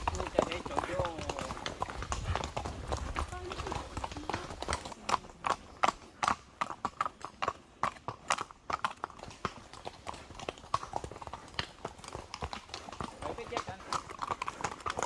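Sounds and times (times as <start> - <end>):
horse hooves clip-clopping: 0.0 - 15.0.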